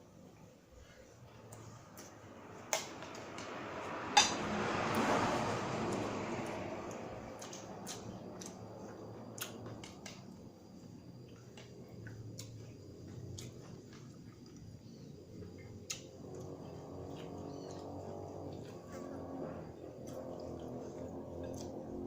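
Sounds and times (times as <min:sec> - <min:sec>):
close-up chewing: 0:05.8 - 0:22.0.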